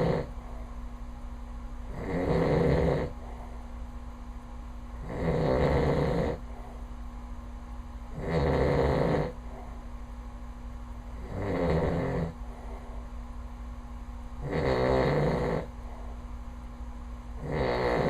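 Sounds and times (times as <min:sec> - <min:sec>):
man snoring loudly: 0:00.0 - 0:00.3, 0:01.9 - 0:03.2, 0:05.0 - 0:06.4, 0:08.2 - 0:09.4, 0:11.2 - 0:12.4, 0:14.4 - 0:15.7, 0:17.4 - 0:18.0
quiet breathing: 0:00.0 - 0:00.9, 0:03.0 - 0:03.9, 0:06.0 - 0:07.0, 0:09.3 - 0:10.0, 0:12.2 - 0:13.3, 0:15.6 - 0:16.4.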